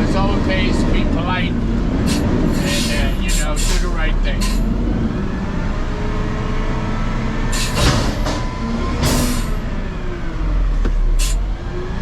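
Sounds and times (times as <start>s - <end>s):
truck engine rumbling: 0.0s - 12.0s
short air hisses: 2.1s - 4.7s, 7.6s - 7.9s, 11.2s - 11.4s.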